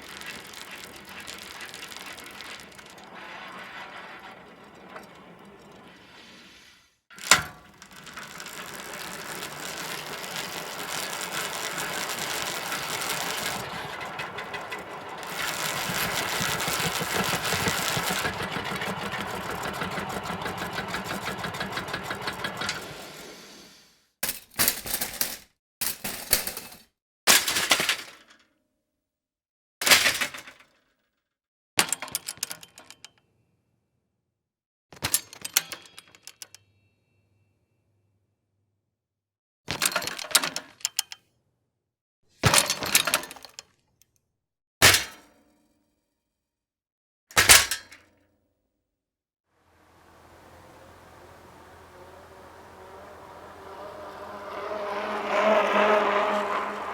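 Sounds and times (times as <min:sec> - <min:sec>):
bicycle drivetrain ticking: 0:00.0 - 0:02.7, 0:07.8 - 0:23.0, 0:50.0 - 0:56.9.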